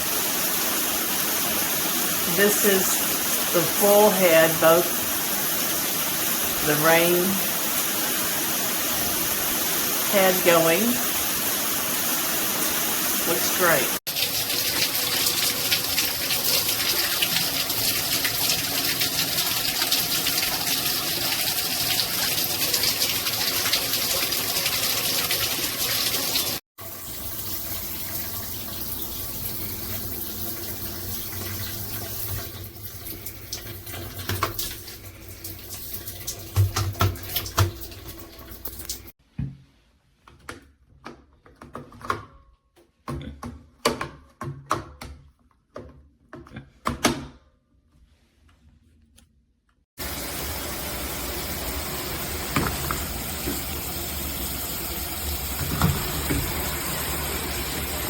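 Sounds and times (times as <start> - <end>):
shower spraying water: 0.0 - 39.2, 50.0 - 58.0
water splashes and knocks: 29.9 - 39.6, 52.0 - 57.7.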